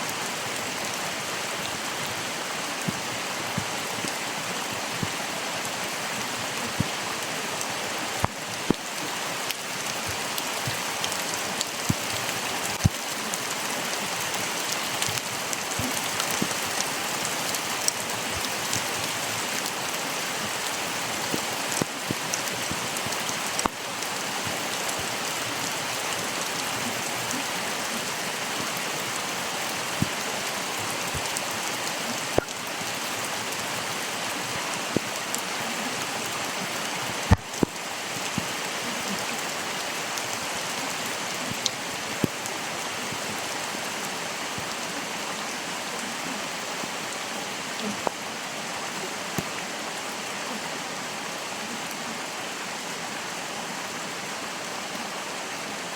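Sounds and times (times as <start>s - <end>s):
water drips and splashes: 0.0s - 44.8s
running water rushing: 0.0s - 55.9s.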